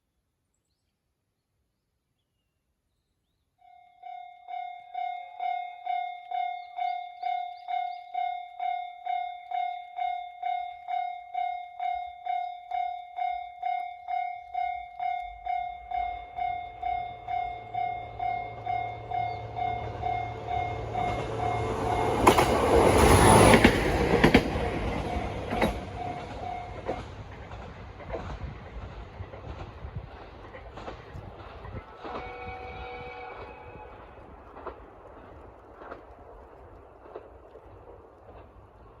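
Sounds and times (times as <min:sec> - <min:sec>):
train rumbling past: 0:05.0 - 0:39.0
wheels clacking over rail joints: 0:14.3 - 0:39.0.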